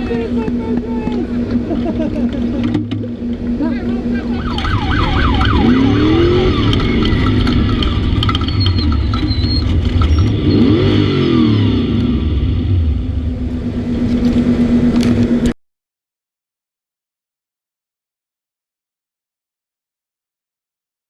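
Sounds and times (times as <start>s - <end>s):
off-road engines revving: 0.0s - 15.6s.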